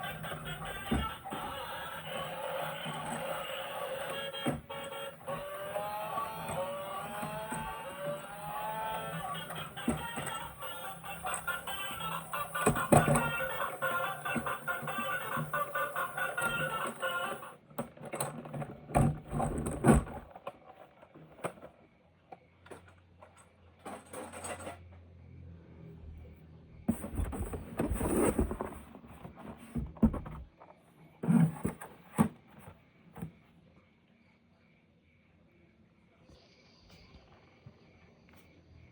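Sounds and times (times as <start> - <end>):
plastic toys scraping and knocking: 0.0 - 21.9, 22.7 - 24.9, 26.9 - 33.4.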